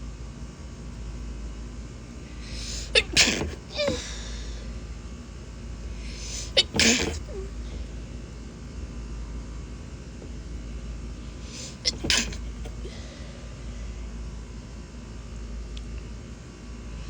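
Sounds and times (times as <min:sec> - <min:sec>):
woman sneezing: 0:02.5 - 0:04.6, 0:06.1 - 0:07.5, 0:11.6 - 0:13.0.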